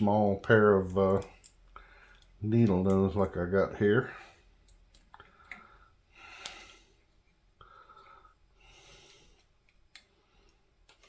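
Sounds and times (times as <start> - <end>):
faint breathing: 1.3 - 2.4, 4.0 - 10.8.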